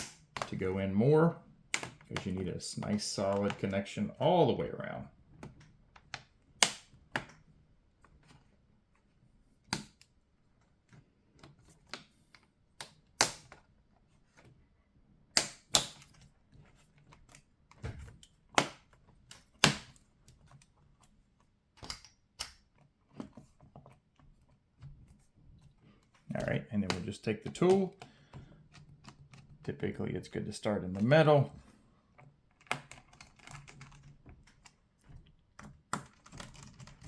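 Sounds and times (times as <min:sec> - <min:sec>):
plastic clips snapping into place: 0:01.7 - 0:02.3, 0:06.1 - 0:07.4, 0:15.4 - 0:16.1.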